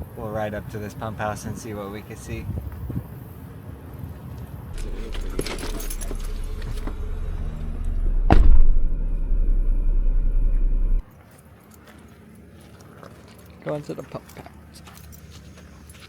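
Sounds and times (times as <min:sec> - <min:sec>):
car rumbling on a trail: 0:00.0 - 0:16.0
rattling and jingling: 0:04.8 - 0:08.0
sharp loud knock: 0:08.3 - 0:08.9.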